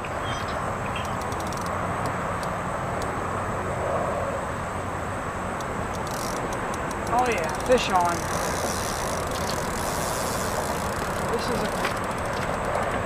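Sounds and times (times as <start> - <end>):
faint ticks: 1.0 - 3.1, 5.6 - 13.0.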